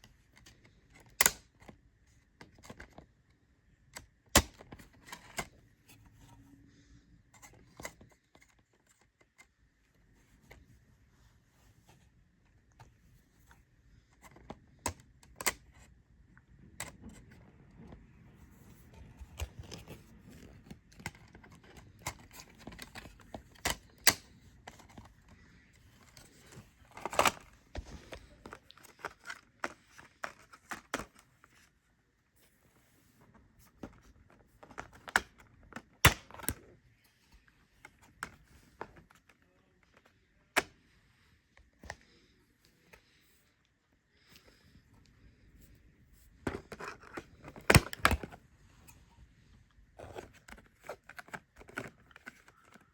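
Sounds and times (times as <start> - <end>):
plastic cases clicking and knocking: 46.4 - 48.4, 50.0 - 52.9.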